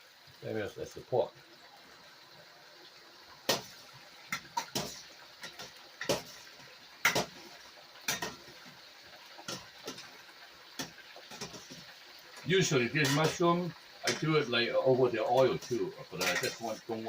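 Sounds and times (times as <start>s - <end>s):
utensil clinking against cookware: 8.1s - 8.4s, 12.9s - 13.4s, 14.1s - 14.3s, 15.4s - 17.0s.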